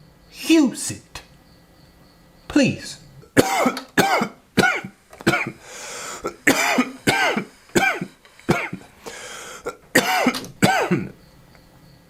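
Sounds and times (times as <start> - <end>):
person coughing hard: 3.3 - 8.9, 9.5 - 11.2
raspy drawn breath: 5.6 - 9.8.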